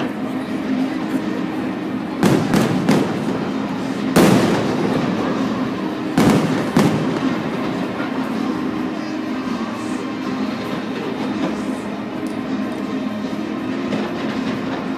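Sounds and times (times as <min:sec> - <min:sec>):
fireworks bangs: 0:02.1 - 0:08.7, 0:13.7 - 0:14.9.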